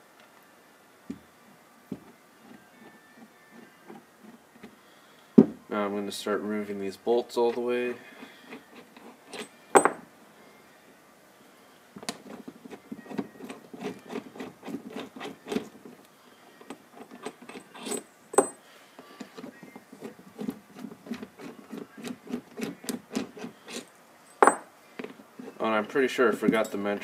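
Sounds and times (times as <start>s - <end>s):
wrench ticking and scraping metal: 16.6s - 18.5s.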